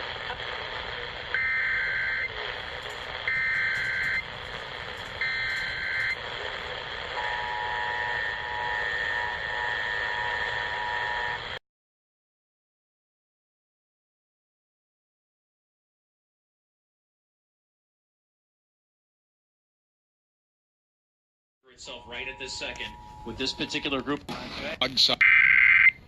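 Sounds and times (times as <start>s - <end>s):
broadcast hiss: 0.0s - 11.6s, 21.7s - 26.0s
buzzy data bursts: 0.0s - 11.6s, 21.7s - 25.9s
two-tone attention signal: 3.2s - 4.3s, 5.2s - 6.2s, 21.7s - 24.0s.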